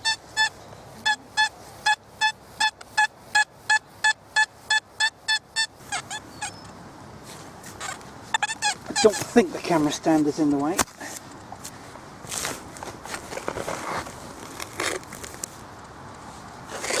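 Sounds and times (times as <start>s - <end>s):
metal detector beeping: 0.0s - 6.7s, 8.3s - 9.3s.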